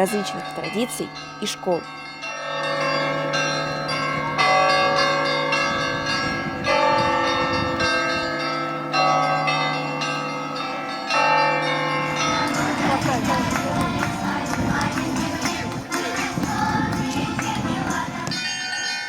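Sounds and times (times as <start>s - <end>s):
small bells striking: 0.0s - 14.2s, 18.2s - 19.0s
church bells pealing: 0.0s - 16.9s, 17.9s - 19.0s.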